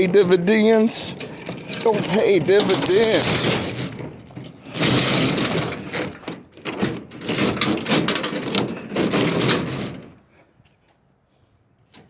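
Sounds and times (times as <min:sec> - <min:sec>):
wire and debris rustling scraping: 0:00.0 - 0:10.1.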